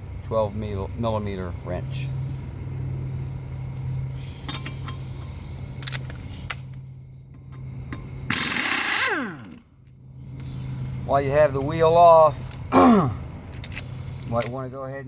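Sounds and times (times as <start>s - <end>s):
steady low hum: 0.0s - 15.0s
pneumatic impact gun burst: 8.3s - 9.6s
metal tools clinking: 13.5s - 15.0s.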